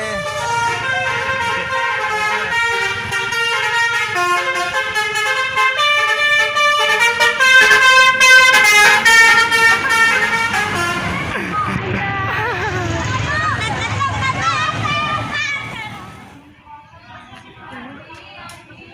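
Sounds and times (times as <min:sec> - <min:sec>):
multi-tone air horn tune: 0:00.0 - 0:11.2.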